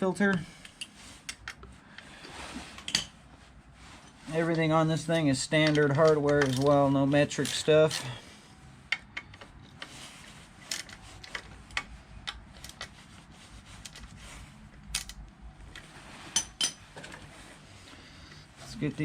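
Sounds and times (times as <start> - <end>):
hand tools clicking on metal: 5.5 - 8.2.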